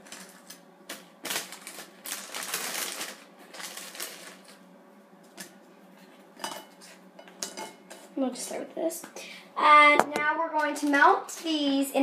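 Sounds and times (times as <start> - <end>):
crackers crunching: 0.0 - 4.7.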